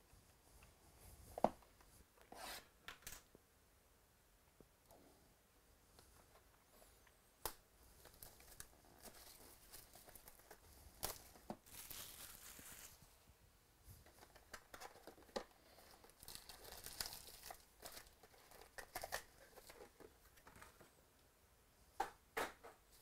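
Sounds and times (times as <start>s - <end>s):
packaging tearing and crinkling: 8.0s - 13.0s, 16.2s - 19.4s.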